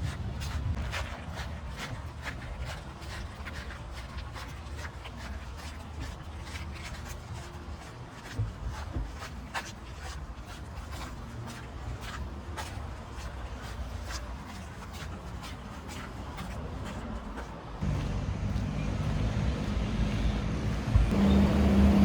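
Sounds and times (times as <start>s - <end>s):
scuffing footsteps on path: 0.0s - 21.2s
low rumble: 17.8s - 22.0s.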